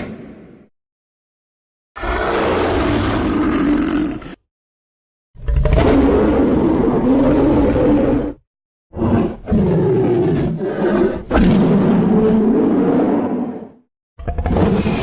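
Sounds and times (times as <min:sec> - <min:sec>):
dinosaur roar: 0:02.0 - 0:04.4, 0:05.4 - 0:08.4, 0:09.0 - 0:15.0.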